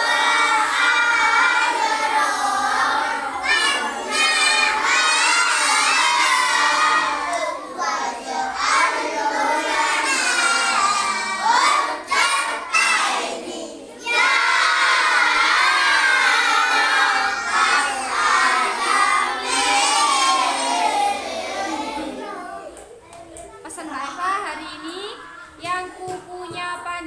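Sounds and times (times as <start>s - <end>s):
children singing in unison: 0.0s - 22.7s.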